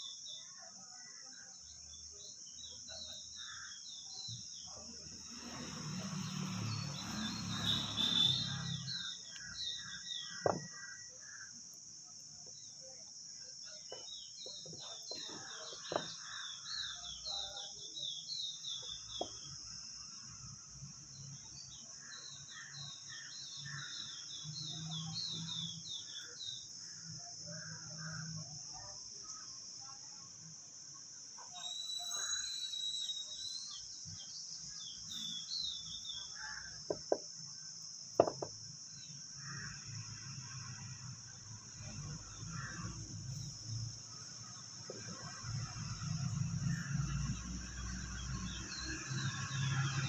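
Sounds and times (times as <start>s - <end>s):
birds chirping: 2.2s - 11.6s, 12.2s - 19.7s
high-pitched insect drone: 5.1s - 9.9s, 31.5s - 34.0s.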